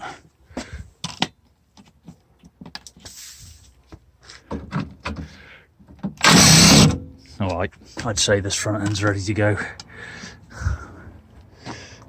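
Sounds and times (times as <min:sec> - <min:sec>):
loud short burst of noise: 0:06.2 - 0:07.0
ratchet clicks and clanks: 0:06.2 - 0:07.0.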